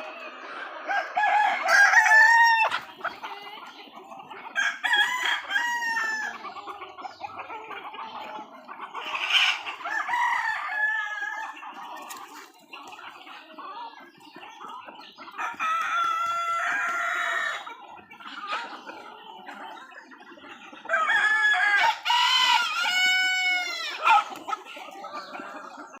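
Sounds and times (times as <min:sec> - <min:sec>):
roosters crowing: 0:00.0 - 0:03.5, 0:04.5 - 0:06.7, 0:09.0 - 0:12.4, 0:15.3 - 0:17.7, 0:20.9 - 0:26.0
hens clucking: 0:00.0 - 0:26.0.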